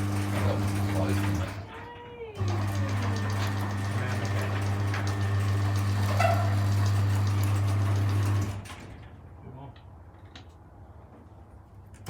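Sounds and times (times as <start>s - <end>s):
garage door motor humming: 0.0s - 9.2s.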